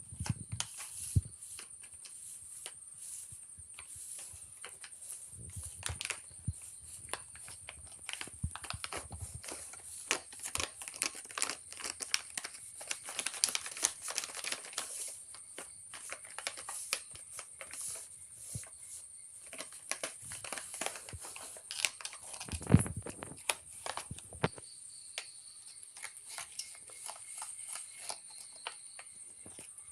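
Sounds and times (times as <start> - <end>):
plastic packet crinkling: 4.2 - 24.5.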